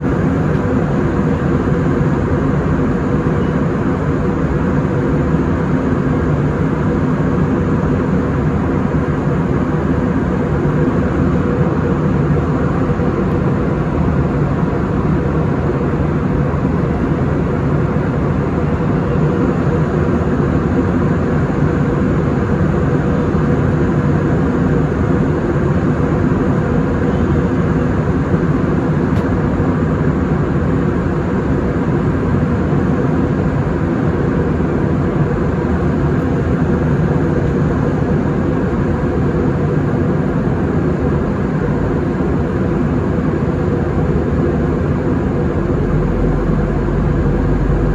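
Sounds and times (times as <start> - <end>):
aircraft engine drone: 0.0 - 47.9
faint steady hum: 30.2 - 47.9.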